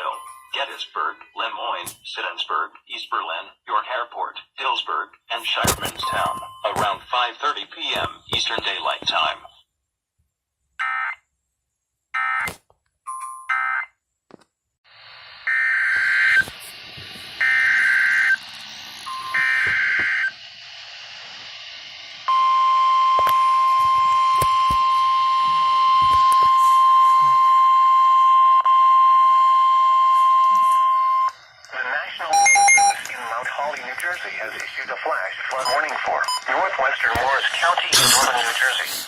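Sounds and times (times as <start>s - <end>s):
radio hiss: 0.0s - 9.6s, 14.9s - 27.5s, 30.1s - 39.0s
buzzy data tone bursts: 14.9s - 27.4s
steady warning alarm tone: 15.4s - 16.6s, 17.3s - 31.5s, 32.2s - 33.4s.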